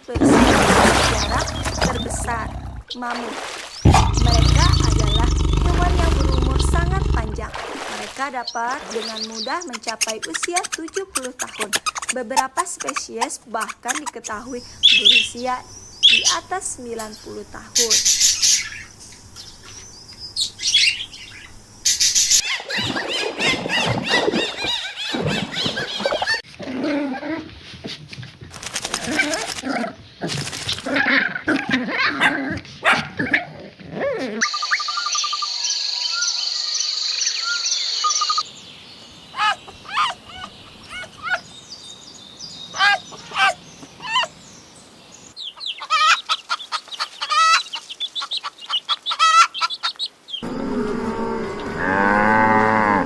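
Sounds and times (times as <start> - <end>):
cow mooing: 3.9 - 7.5, 50.4 - 53.0
bird squawks and chirps: 34.4 - 36.4.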